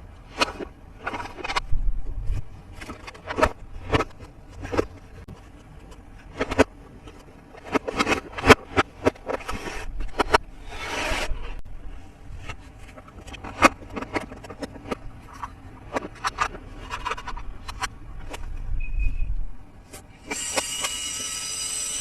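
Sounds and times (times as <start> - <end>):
plastic parts tapping and clicking: 12.8 - 18.5.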